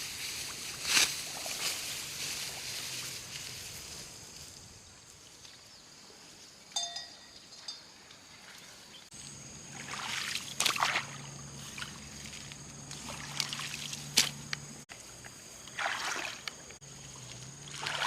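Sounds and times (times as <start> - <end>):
water splashing and sloshing: 8.3 - 18.0.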